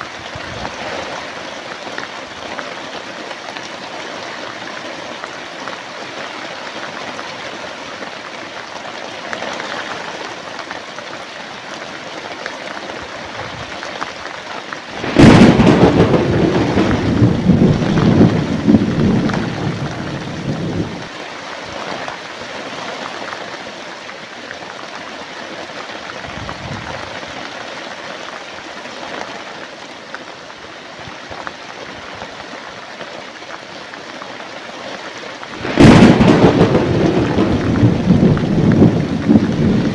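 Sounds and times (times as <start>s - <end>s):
heavy rain: 0.0s - 39.9s
thunderclap rumbling: 14.9s - 21.1s, 35.5s - 39.9s.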